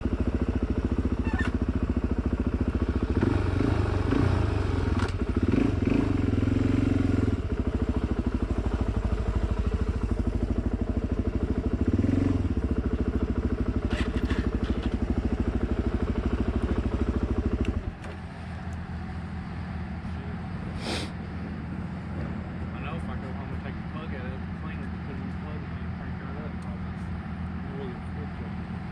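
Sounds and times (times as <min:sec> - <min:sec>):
dirt bike engine revving: 0:02.9 - 0:10.0, 0:11.5 - 0:13.2, 0:20.7 - 0:21.2.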